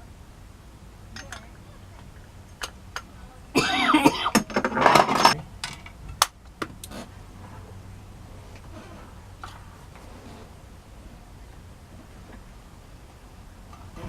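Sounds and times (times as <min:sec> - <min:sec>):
man coughing: 0:03.6 - 0:04.4.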